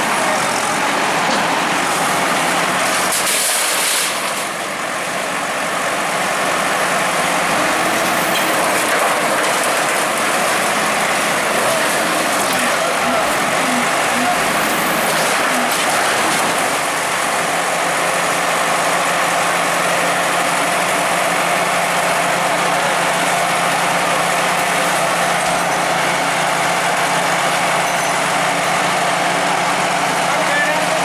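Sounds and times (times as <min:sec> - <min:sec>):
bulldozer diesel engine running: 0:00.0 - 0:31.0.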